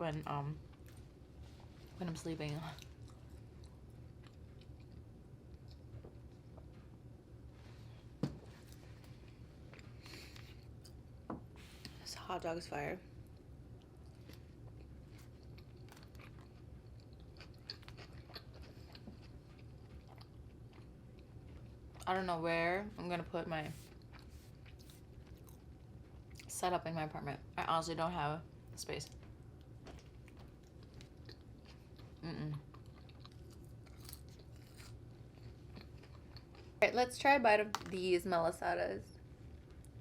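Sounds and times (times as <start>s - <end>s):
faint low hum: 0.0s - 40.0s
person chewing food: 2.6s - 7.1s, 8.0s - 11.2s, 13.2s - 22.1s, 23.8s - 26.5s, 28.6s - 36.8s.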